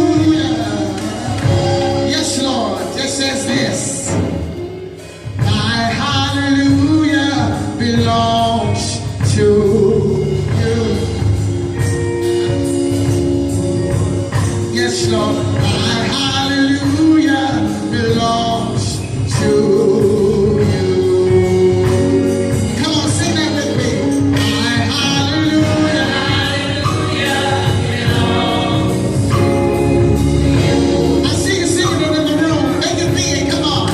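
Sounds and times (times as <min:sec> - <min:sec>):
gospel choir singing: 0:00.0 - 0:04.8, 0:14.3 - 0:33.9
instrumental accompaniment: 0:00.0 - 0:33.9.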